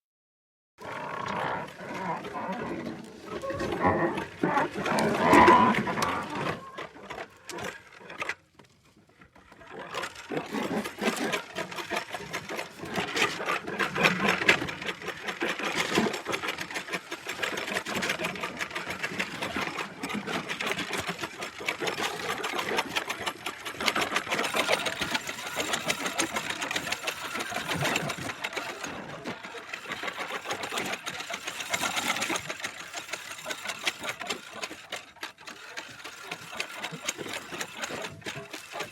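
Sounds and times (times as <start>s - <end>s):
old wheel creaking: 0.8s - 38.9s
rapid dense rattle: 9.7s - 38.9s.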